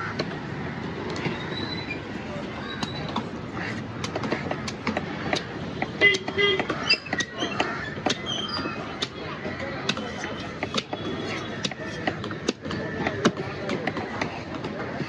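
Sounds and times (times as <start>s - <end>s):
noisy market background: 0.0s - 15.0s.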